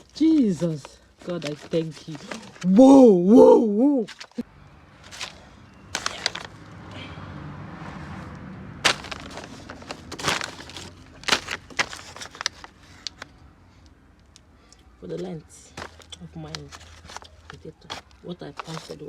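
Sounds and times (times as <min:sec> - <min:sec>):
handling rustling: 0:00.0 - 0:02.9, 0:04.0 - 0:04.4, 0:05.0 - 0:06.7, 0:08.2 - 0:13.4, 0:15.1 - 0:19.0.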